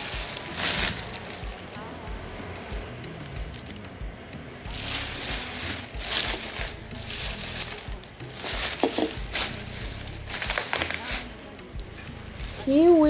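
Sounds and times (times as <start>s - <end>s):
plastic bags rustling: 0.0s - 4.0s, 4.6s - 13.0s.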